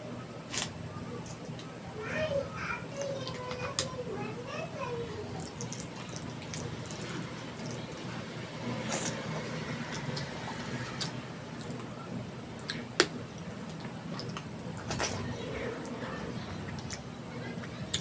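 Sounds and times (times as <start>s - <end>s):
wet squishing and smacking of food: 5.4s - 11.9s, 12.5s - 15.3s.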